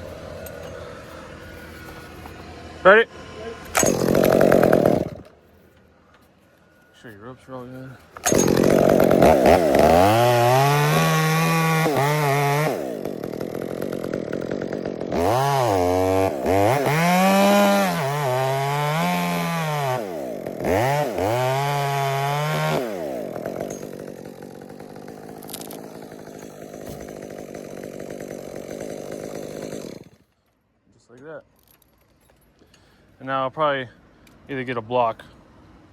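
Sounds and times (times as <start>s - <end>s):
chainsaw cutting wood: 0.0s - 5.4s, 8.2s - 30.4s.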